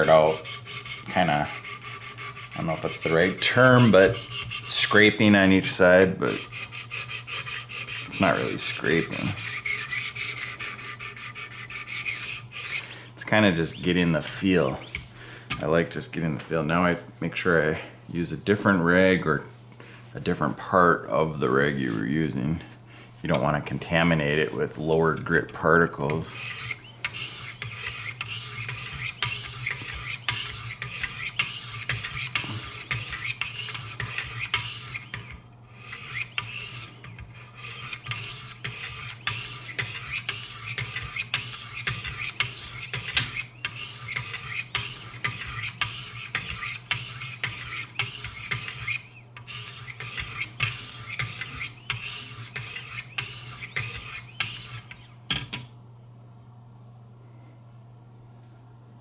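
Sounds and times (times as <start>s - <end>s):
steady low hum: 0.0s - 59.0s
sharpening stones rasping on knife: 26.3s - 55.0s.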